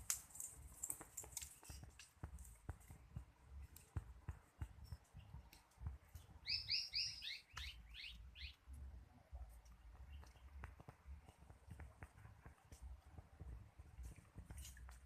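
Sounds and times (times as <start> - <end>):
bird chirping: 6.1 - 8.7.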